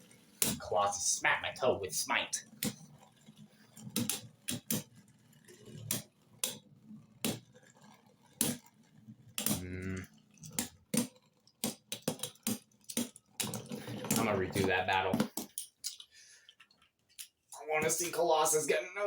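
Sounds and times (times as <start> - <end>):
plastic clicks and clacks: 0.0 - 0.7, 2.4 - 17.4
person humming: 9.6 - 10.1.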